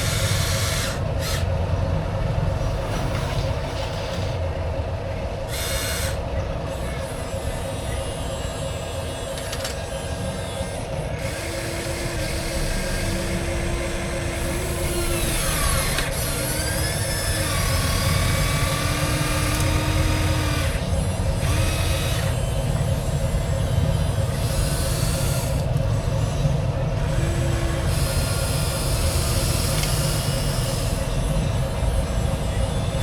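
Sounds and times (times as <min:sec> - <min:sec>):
electric motor hum: 0:07.8 - 0:33.0
motor whines rising and falling: 0:11.4 - 0:23.1.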